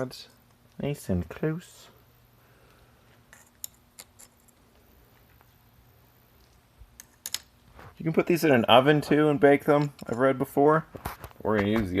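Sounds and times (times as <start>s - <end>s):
small metal parts clinking: 3.3s - 4.7s.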